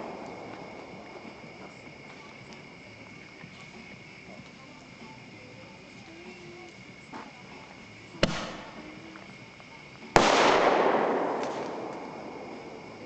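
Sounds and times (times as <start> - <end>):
fireworks bangs: 0.0 - 2.5, 8.2 - 8.8, 10.2 - 13.0.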